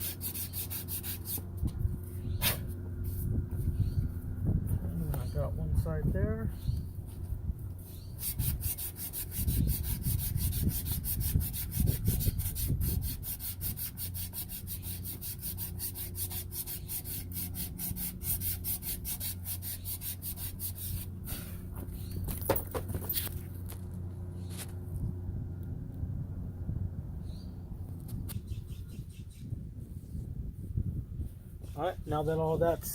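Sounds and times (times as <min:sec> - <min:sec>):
sanding a copper pipe by hand: 0:00.0 - 0:01.5, 0:07.8 - 0:21.2.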